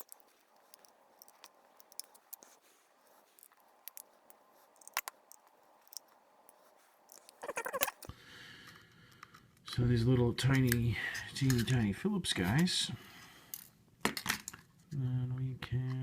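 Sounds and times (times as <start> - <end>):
small parts clicking and tapping: 0.0 - 8.1.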